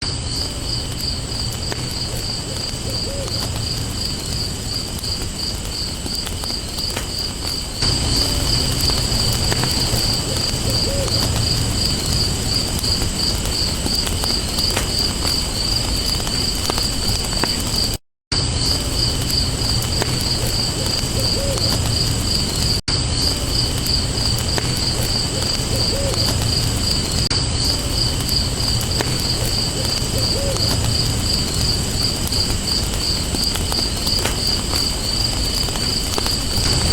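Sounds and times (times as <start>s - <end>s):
insects chirping: 0.0s - 36.9s
light crackles: 0.3s - 18.0s, 18.6s - 36.9s
faint low hoots: 1.4s - 5.7s, 6.4s - 13.5s, 20.2s - 22.6s, 25.2s - 32.1s.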